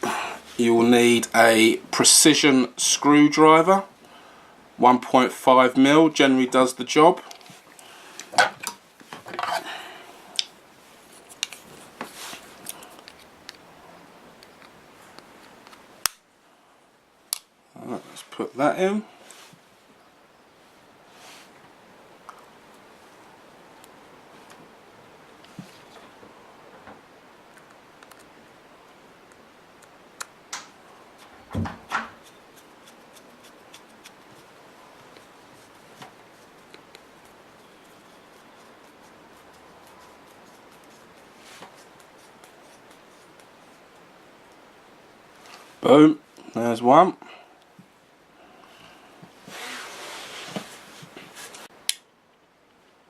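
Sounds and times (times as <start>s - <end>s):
background hiss: 0.0s - 53.0s
short rustle: 9.0s - 13.3s, 49.3s - 51.7s
handling rustle: 10.8s - 13.6s.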